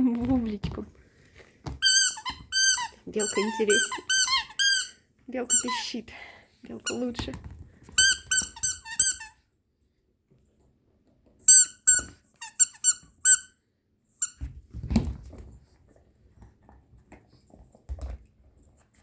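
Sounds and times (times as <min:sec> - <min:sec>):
dog toy squeaking: 0:01.8 - 0:05.8, 0:08.0 - 0:09.3, 0:11.5 - 0:13.5, 0:14.2 - 0:14.4.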